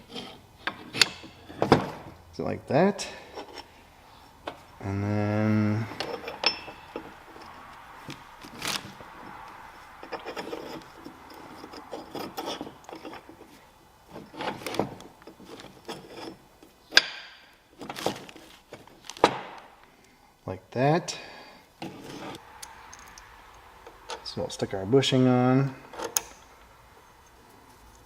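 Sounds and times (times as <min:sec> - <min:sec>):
metal parts clinking and scraping: 0:00.0 - 0:02.1, 0:03.0 - 0:04.8, 0:05.8 - 0:09.0, 0:09.8 - 0:19.4, 0:21.8 - 0:24.4, 0:25.6 - 0:28.0.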